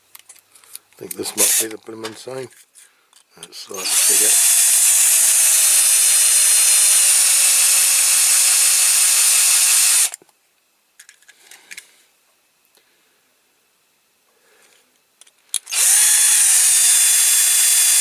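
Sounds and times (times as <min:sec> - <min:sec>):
electric drill drilling: 0:03.8 - 0:10.2, 0:15.7 - 0:18.0.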